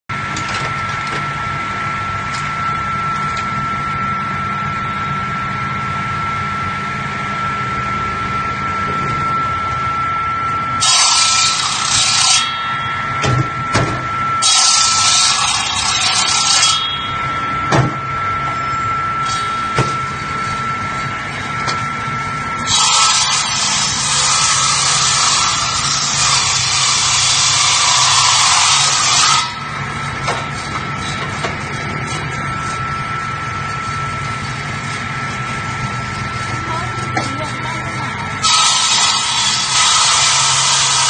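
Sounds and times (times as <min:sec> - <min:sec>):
machine motor hum and whine: 0:00.1 - 0:41.0
saw blades cutting ice: 0:10.8 - 0:12.7, 0:14.4 - 0:17.0, 0:22.6 - 0:29.7, 0:38.4 - 0:41.0.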